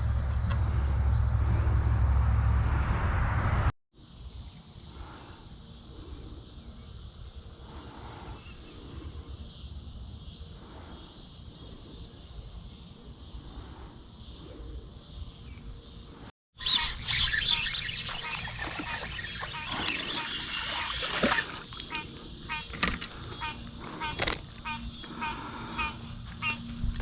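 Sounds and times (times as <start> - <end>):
insects chorus: 0.0 - 3.0, 4.0 - 27.0
loud low rumble: 0.0 - 3.7.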